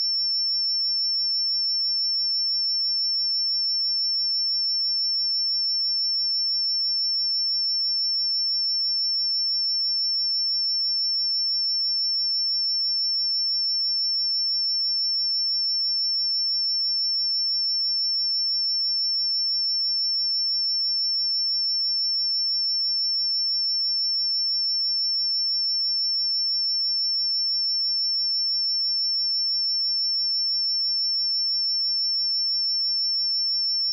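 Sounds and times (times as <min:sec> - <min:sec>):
high-pitched sine test tone: 0:21.7 - 0:33.9.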